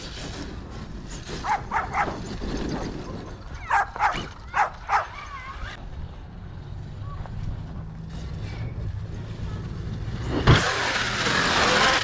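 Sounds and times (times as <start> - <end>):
dog barking: 1.4 - 2.2, 3.6 - 5.2.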